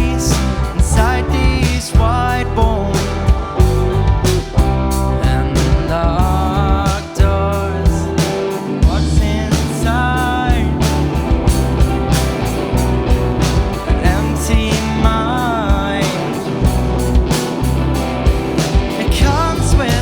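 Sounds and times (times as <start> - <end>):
lead vocal singing: 0.0 - 3.9, 4.7 - 11.8, 13.6 - 17.1, 18.8 - 20.0
rock band playing: 0.0 - 20.0.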